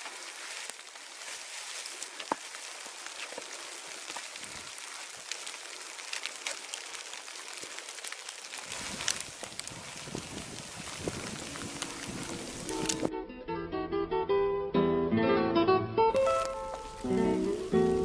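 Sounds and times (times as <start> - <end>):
snow pellets pattering: 0.0 - 13.1, 16.1 - 18.0.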